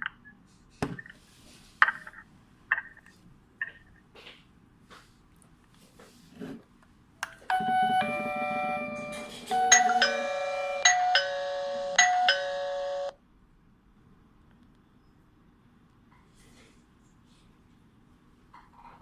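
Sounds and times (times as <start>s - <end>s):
doorbell chime tune: 7.5s - 13.2s.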